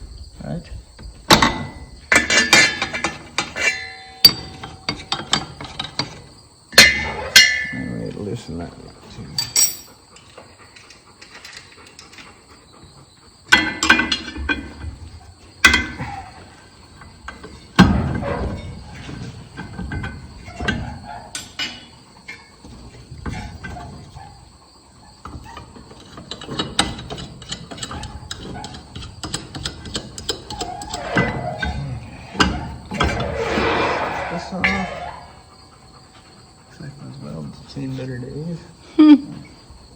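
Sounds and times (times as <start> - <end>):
loud metal clanks: 1.3 - 8.0, 17.1 - 24.2, 25.3 - 36.3
light metal clicks and rattles: 9.2 - 12.5, 25.1 - 33.4.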